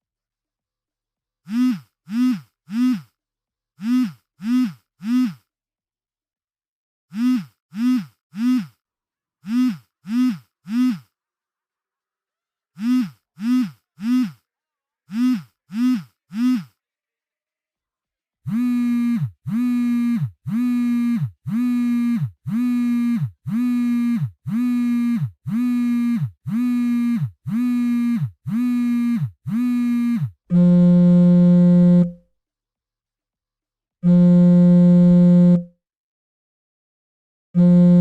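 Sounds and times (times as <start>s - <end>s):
phone vibrating buzzes: 1.4s - 3.2s, 3.8s - 5.5s, 7.1s - 8.8s, 9.4s - 11.2s, 12.8s - 14.5s, 15.1s - 16.8s, 18.5s - 32.3s, 34.0s - 35.8s, 37.6s - 38.0s.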